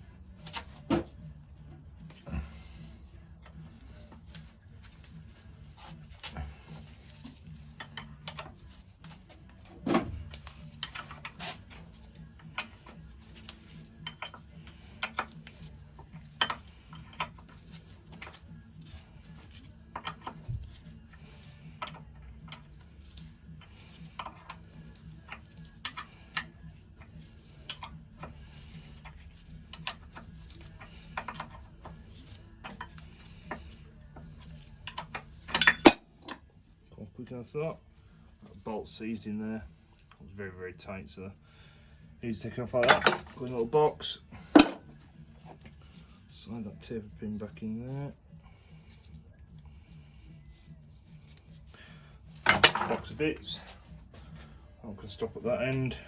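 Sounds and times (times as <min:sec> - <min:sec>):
spanner clinking on metal: 0:07.6 - 0:08.6, 0:10.4 - 0:11.6, 0:14.0 - 0:18.4, 0:23.7 - 0:26.6, 0:29.7 - 0:33.6, 0:34.8 - 0:36.4, 0:42.8 - 0:43.4, 0:44.5 - 0:45.1, 0:52.4 - 0:53.6.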